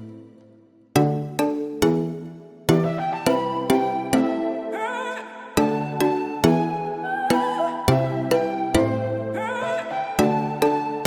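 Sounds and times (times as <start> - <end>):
instrumental music on steady beat: 1.0 - 4.7.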